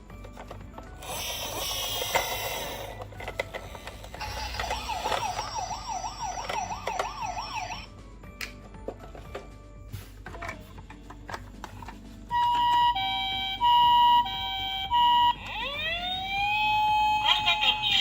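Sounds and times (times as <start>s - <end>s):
toy siren wailing: 4.2s - 7.9s, 12.3s - 18.0s.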